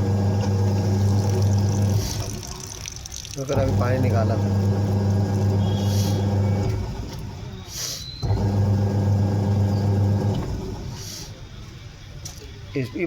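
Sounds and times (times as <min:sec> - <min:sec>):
washing machine motor humming: 0:00.0 - 0:11.4
brief high hisses: 0:05.7 - 0:06.3, 0:07.7 - 0:08.2.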